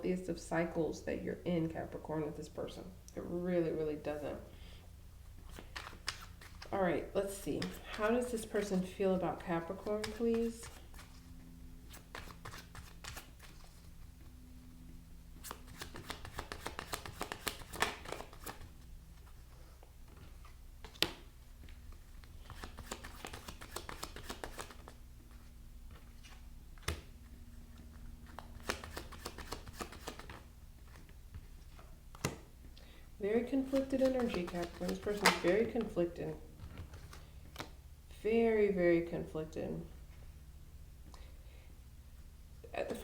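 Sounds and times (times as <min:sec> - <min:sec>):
cards shuffling: 0:05.4 - 0:08.9, 0:09.6 - 0:11.2, 0:11.9 - 0:13.9, 0:15.4 - 0:19.4, 0:20.1 - 0:27.1, 0:27.8 - 0:32.5, 0:33.5 - 0:36.0, 0:36.6 - 0:37.8.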